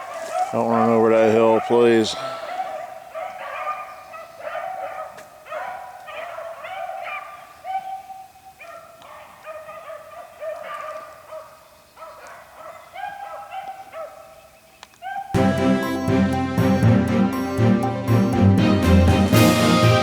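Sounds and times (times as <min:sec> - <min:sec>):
dogs baying: 0:00.0 - 0:15.4.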